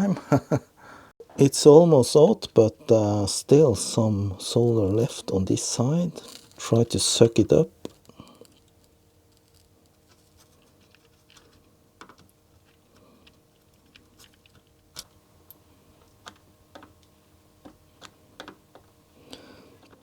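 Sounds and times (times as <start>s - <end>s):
faint steady hum: 0.0s - 20.0s
small clicks and taps: 10.9s - 18.9s.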